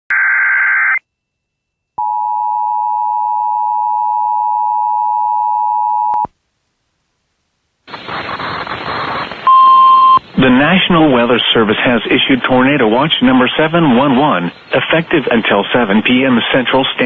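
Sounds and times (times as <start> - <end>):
harsh hiss of noise: 7.8 - 9.5, 10.2 - 17.0.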